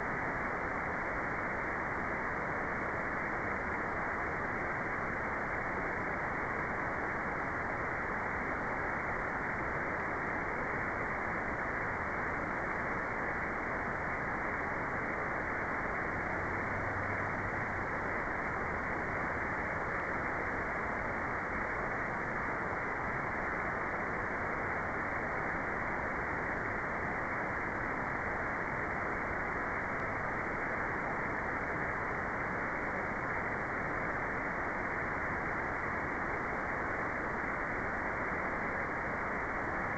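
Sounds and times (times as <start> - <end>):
dull white noise rush: 0.0 - 39.9.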